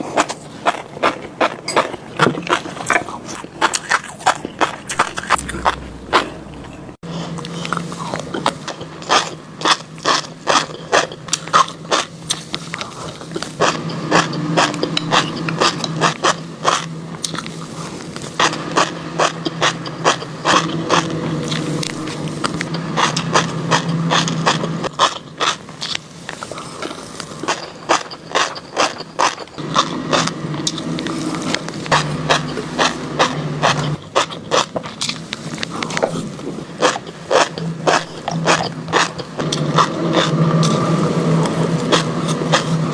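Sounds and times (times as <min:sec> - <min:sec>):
chewing crunchy fish roe: 0:00.0 - 0:06.1, 0:08.2 - 0:42.9
low steady hum: 0:04.9 - 0:07.0.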